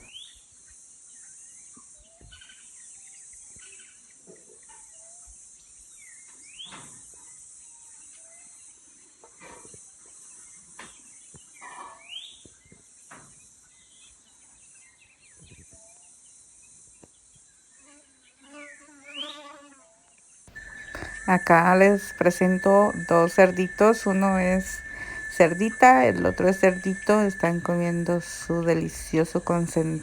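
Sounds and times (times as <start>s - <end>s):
bird rising call: 20.5s - 30.0s
cicadas buzzing: 20.5s - 30.0s.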